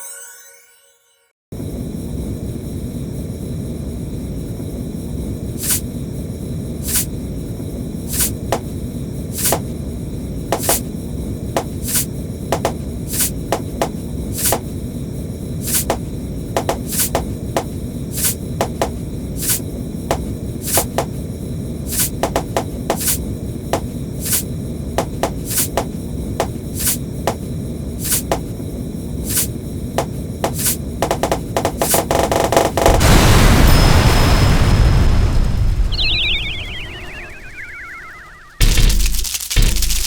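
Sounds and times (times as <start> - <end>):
popcorn popping: 10.5 - 10.9, 11.6 - 14.6, 15.6 - 21.2, 21.9 - 24.4, 25.0 - 27.4, 29.2 - 33.0, 38.6 - 40.0.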